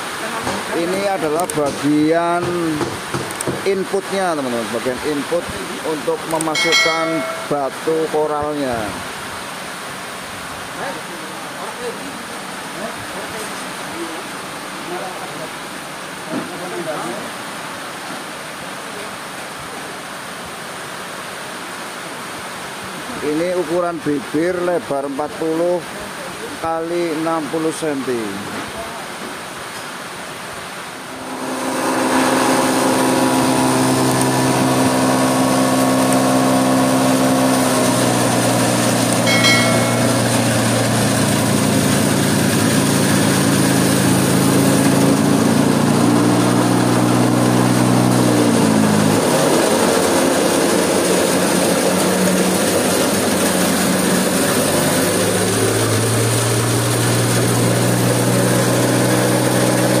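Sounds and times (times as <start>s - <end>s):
stone crusher motor humming: 31.1s - 45.0s.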